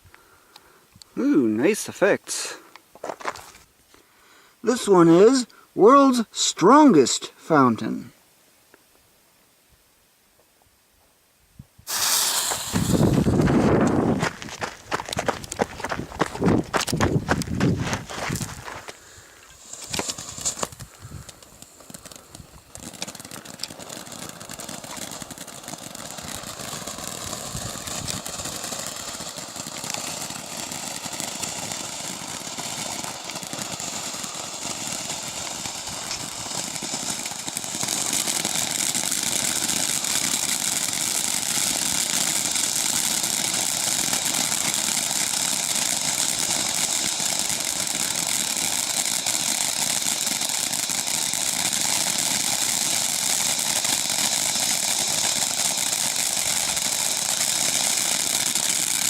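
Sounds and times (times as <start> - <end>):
firework fountain hissing: 11.8 - 59.0.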